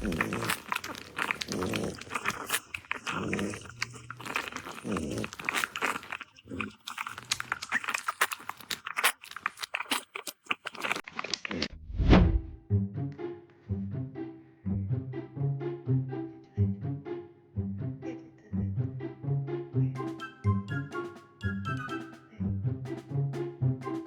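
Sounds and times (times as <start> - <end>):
puppy chewing and crunching: 0.0 - 11.7.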